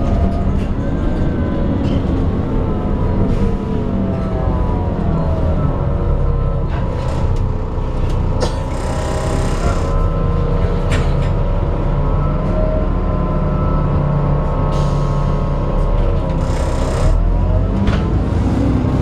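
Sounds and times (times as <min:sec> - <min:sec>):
bus engine drone: 0:00.0 - 0:19.0.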